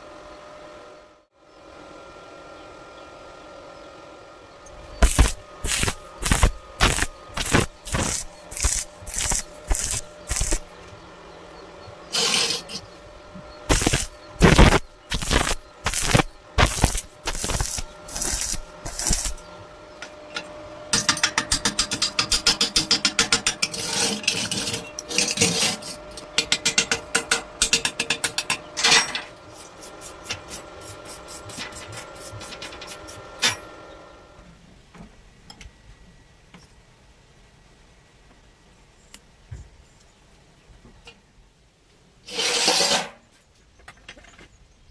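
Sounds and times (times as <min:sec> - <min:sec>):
welding machine humming: 0:04.7 - 0:33.8
welding arc crackle: 0:04.9 - 0:10.8, 0:12.1 - 0:12.8, 0:13.7 - 0:19.4.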